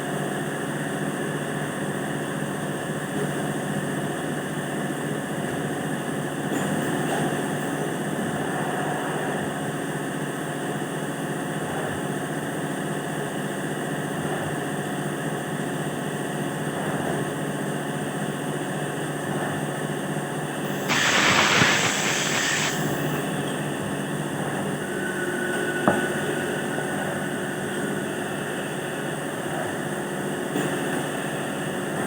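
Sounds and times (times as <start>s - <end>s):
burst of hiss: 20.6s - 23.3s.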